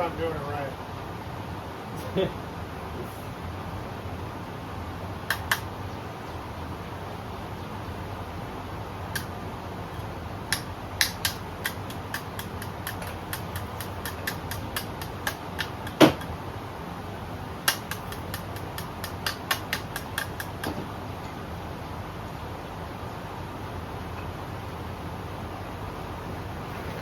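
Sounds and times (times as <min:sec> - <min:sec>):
fan running: 0:00.0 - 0:27.0
metal tool clicks and taps: 0:10.5 - 0:16.3, 0:17.7 - 0:20.8.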